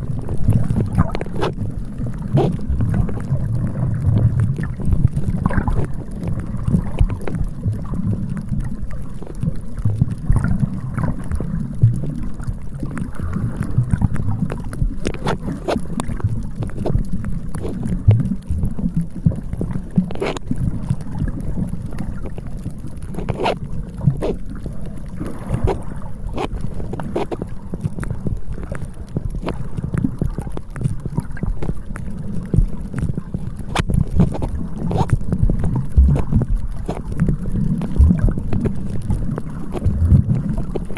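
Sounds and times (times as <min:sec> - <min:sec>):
sea washing on beach: 0:00.0 - 0:40.9
wind rumbling on microphone: 0:00.0 - 0:40.9.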